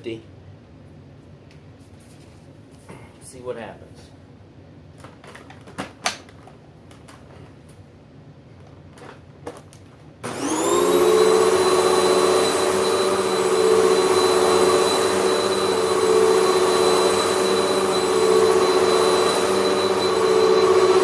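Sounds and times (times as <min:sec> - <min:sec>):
vacuum cleaner motor whine: 0:10.2 - 0:21.0.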